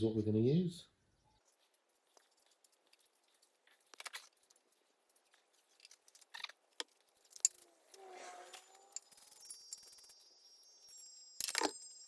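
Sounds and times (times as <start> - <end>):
parts and tools clicking and rattling: 1.4 - 12.0
short scraping squeak: 7.9 - 9.4.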